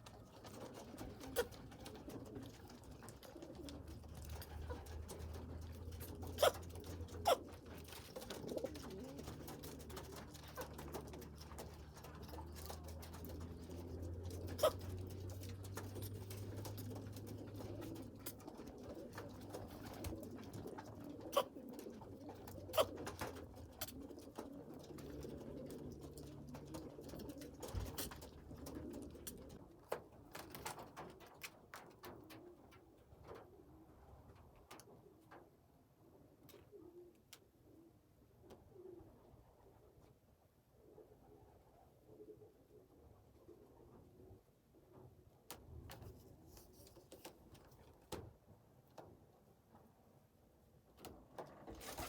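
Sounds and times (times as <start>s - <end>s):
pigeons cooing: 0.0s - 29.6s.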